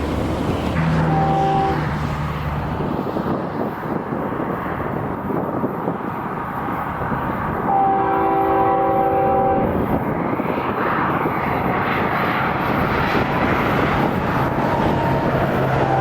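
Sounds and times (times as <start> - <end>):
train rumble: 0.0 - 16.0
locomotive air horn chord: 0.9 - 1.9, 7.7 - 9.7, 15.8 - 16.0.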